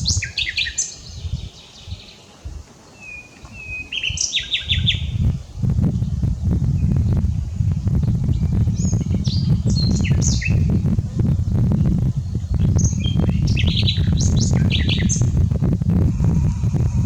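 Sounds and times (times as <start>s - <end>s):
nightingale singing: 0.0s - 17.0s
steady low rumble: 4.7s - 17.0s.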